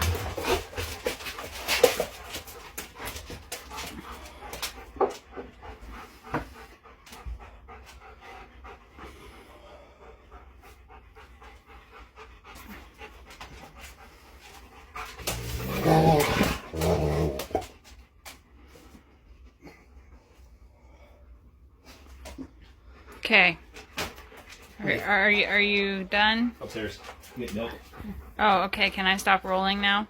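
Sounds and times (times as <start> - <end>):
hard panting breaths: 2.0 - 15.3, 26.2 - 28.8.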